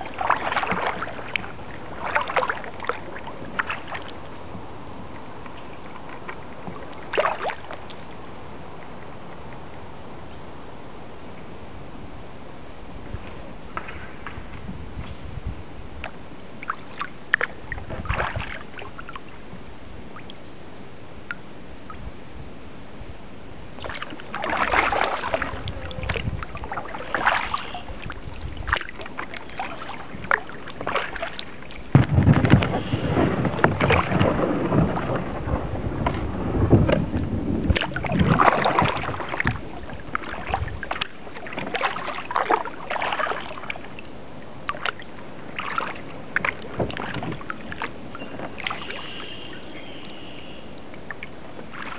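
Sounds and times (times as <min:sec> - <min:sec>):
kayak paddle splashing in water: 0:00.0 - 0:04.6, 0:05.2 - 0:08.2, 0:16.0 - 0:19.3, 0:23.8 - 0:51.9
low rumble: 0:31.9 - 0:40.9.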